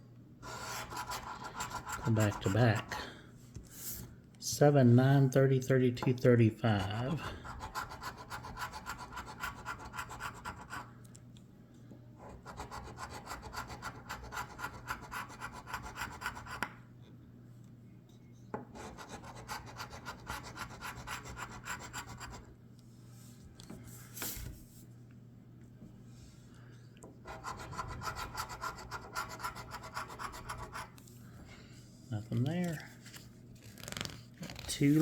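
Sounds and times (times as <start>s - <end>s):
lottery ticket being scratched: 0.6s - 2.8s.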